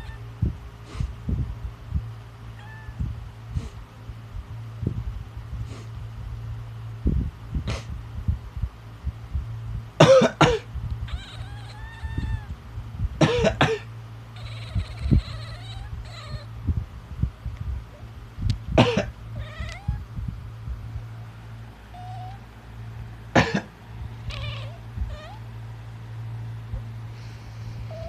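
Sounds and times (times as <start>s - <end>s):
cat meowing: 0.0s - 0.3s, 2.6s - 3.0s, 11.1s - 12.6s, 14.4s - 16.5s, 19.4s - 20.1s, 21.9s - 22.4s, 24.2s - 25.4s
person coughing: 10.0s - 10.7s, 13.2s - 13.9s, 18.8s - 19.1s, 23.4s - 23.7s.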